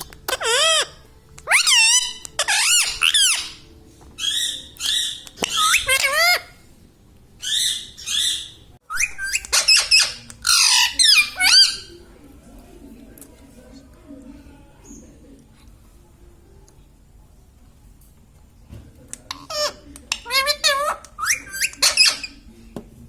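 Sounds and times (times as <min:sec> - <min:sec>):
parrot squawking: 0:00.3 - 0:06.6, 0:07.4 - 0:11.9, 0:19.3 - 0:22.4.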